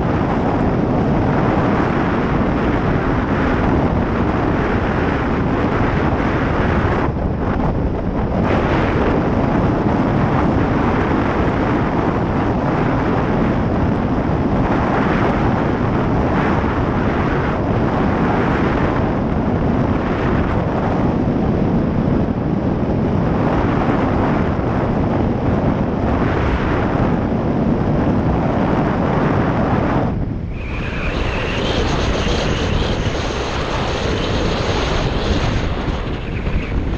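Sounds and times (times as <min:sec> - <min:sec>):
wind buffeting microphone: 0:00.0 - 0:36.9
faint high whine: 0:30.2 - 0:36.9.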